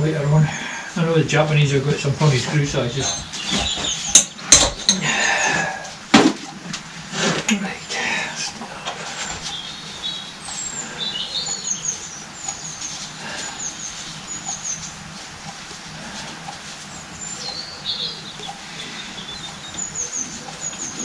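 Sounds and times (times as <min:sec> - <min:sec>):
small bird chirping: 0:09.4 - 0:15.0, 0:16.9 - 0:21.0
bird warbling: 0:17.1 - 0:21.0.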